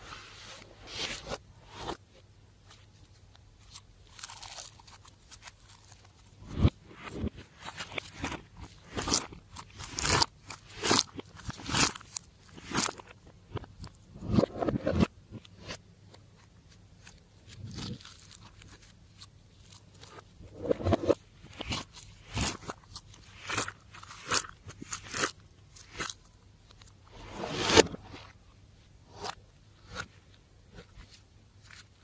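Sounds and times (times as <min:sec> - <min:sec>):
slime crackling and popping: 0:07.6 - 0:14.0.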